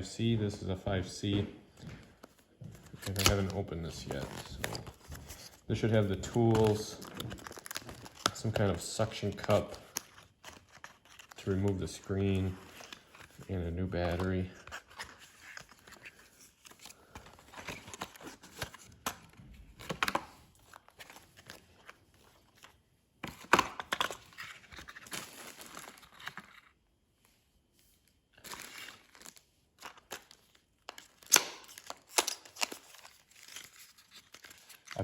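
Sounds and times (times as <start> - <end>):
packaging rustling and crinkling: 1.2 - 26.8, 28.3 - 35.0
sharp packaging snaps: 2.9 - 5.0, 28.4 - 35.0.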